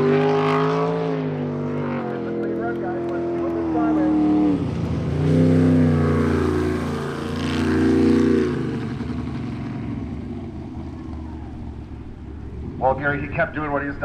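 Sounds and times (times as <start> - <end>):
boat engine at high revs: 0.0 - 13.7.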